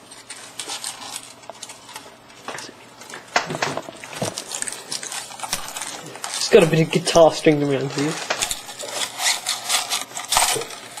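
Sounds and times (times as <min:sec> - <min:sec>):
objects knocking and rattling on desk: 0:03.4 - 0:04.4.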